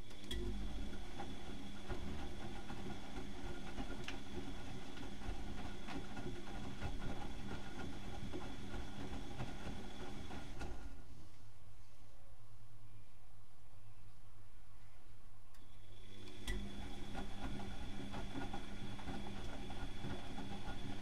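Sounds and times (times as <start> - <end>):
washing machine motor humming: 0.0 - 11.0, 15.8 - 21.0.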